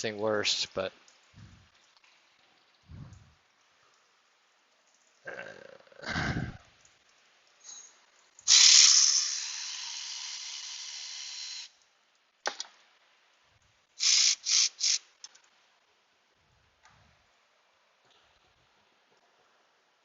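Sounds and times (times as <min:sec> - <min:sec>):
short hisses: 0:08.5 - 0:10.9, 0:14.0 - 0:15.0
hissing spray: 0:08.5 - 0:11.7, 0:14.0 - 0:15.1.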